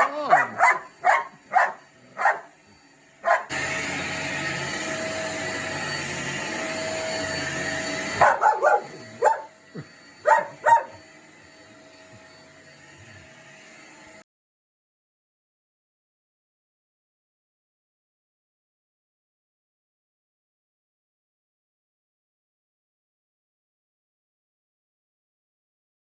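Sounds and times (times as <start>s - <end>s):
dog barking: 0.0s - 2.5s, 3.2s - 3.6s, 8.2s - 9.6s, 10.2s - 11.0s
vacuum cleaner running: 0.0s - 14.2s.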